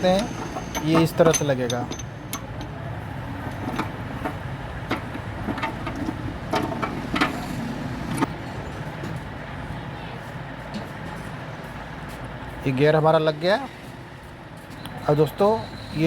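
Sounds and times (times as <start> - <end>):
metal gear clinking: 0.0 - 2.8
low background hum: 0.0 - 16.0.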